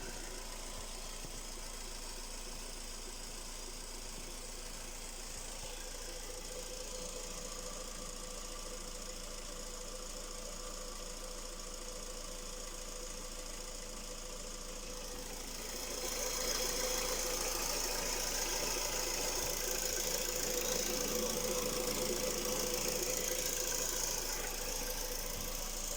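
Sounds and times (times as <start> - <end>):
engine knock: 0.0 - 25.9
petrol engine running: 14.8 - 25.9.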